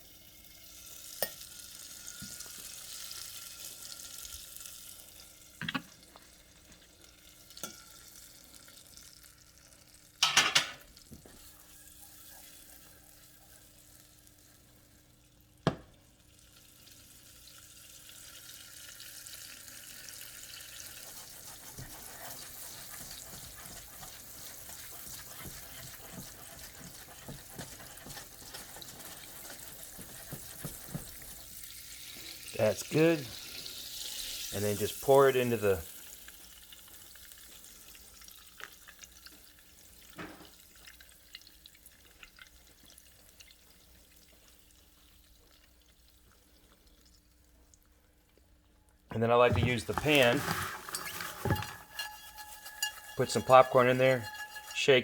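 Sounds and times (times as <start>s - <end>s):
butter sizzling in saucepan: 0.0s - 48.3s, 49.2s - 55.0s
pan knocking: 49.4s - 55.0s.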